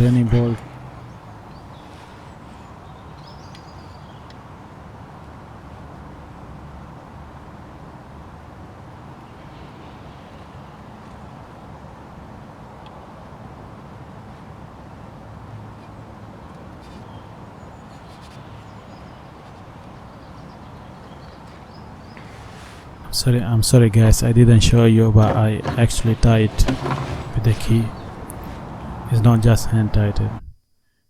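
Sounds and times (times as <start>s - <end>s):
faint clicks: 0.0s - 5.3s, 7.3s - 23.3s.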